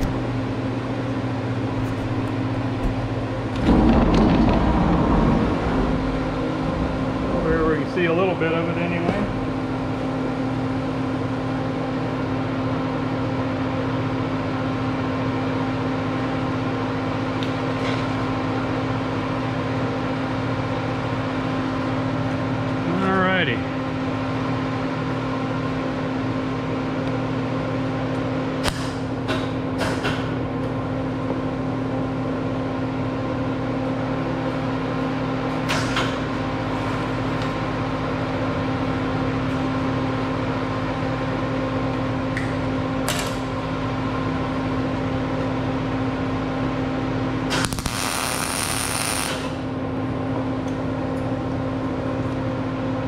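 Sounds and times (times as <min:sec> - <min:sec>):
welder humming: 0:47.5 - 0:49.7
arc welding bursts: 0:47.6 - 0:49.6.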